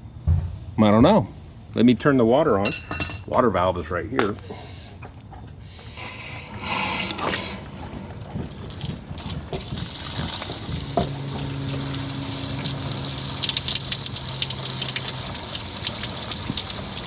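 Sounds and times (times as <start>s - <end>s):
steady low hum: 0.0s - 17.0s
water rushing from hose: 6.0s - 17.0s.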